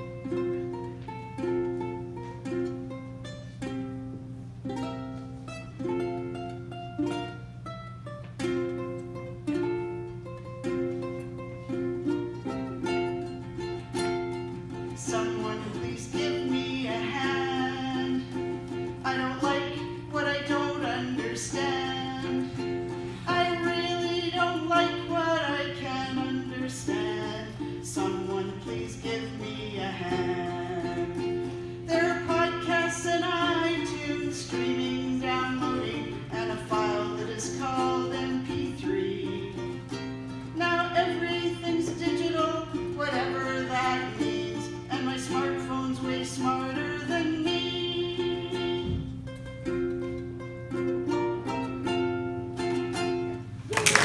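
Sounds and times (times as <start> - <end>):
ukulele strumming: 0.0 - 54.0
person singing: 11.7 - 49.8.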